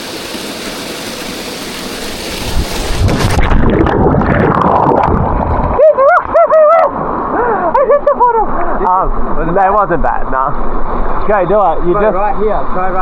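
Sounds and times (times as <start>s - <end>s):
rushing water: 0.0s - 9.6s
wind on microphone: 2.1s - 6.0s.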